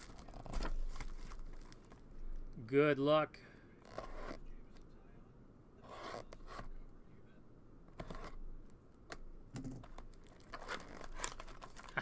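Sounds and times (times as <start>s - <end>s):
foil wrapper crinkling: 0.0s - 2.0s, 10.0s - 12.0s.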